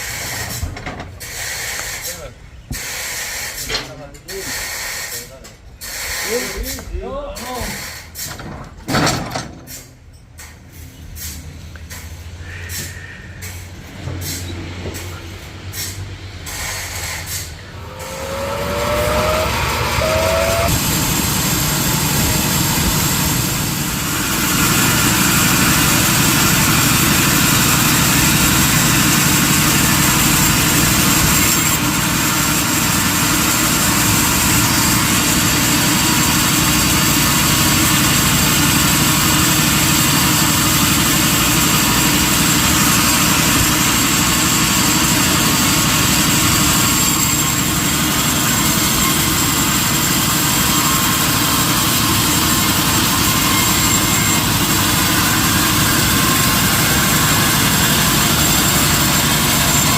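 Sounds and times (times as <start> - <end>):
sawmill machinery running: 13.4 - 59.9
faint high whine: 17.6 - 23.6.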